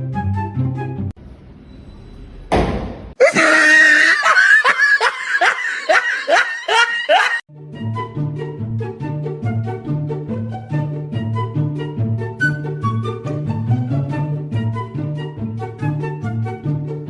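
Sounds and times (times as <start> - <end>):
person shrieking: 3.2 - 7.4.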